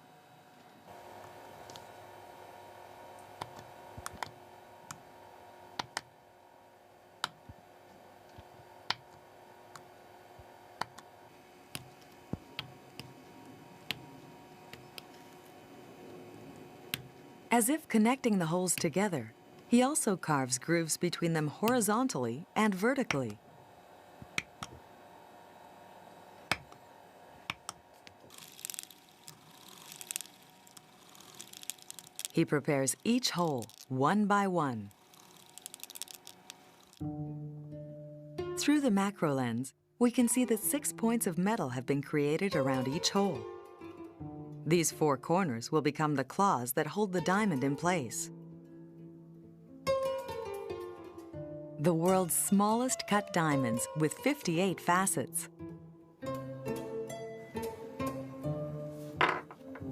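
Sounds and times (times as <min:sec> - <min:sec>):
faint steady hum: 0:00.0 - 0:37.0
engraving tool clicks: 0:27.5 - 0:32.4, 0:34.9 - 0:37.0.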